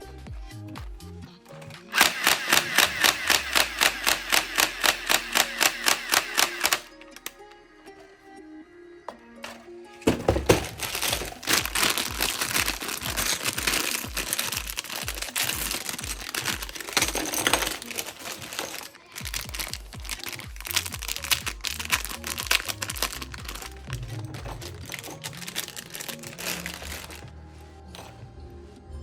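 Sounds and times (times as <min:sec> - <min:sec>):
music with fast steady beat: 0:00.0 - 0:01.3, 0:19.1 - 0:24.9
crisp clicking percussion: 0:10.9 - 0:27.3.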